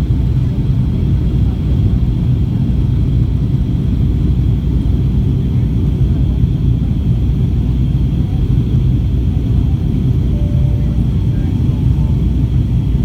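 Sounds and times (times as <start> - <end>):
airplane cabin rumble: 0.0 - 13.0
faint high whine: 9.3 - 13.0.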